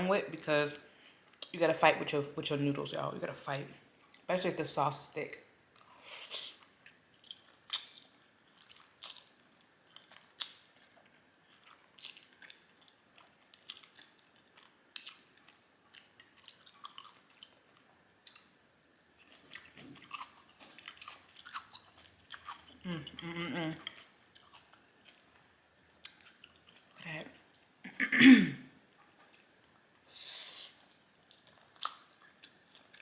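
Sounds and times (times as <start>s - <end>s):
close chewing with wet mouth smacks: 6.7s - 17.6s, 18.2s - 23.2s.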